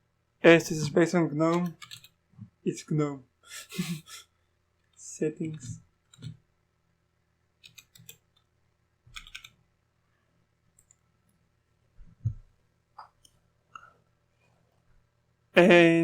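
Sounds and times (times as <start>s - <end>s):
faint computer mouse clicks: 7.6s - 8.5s.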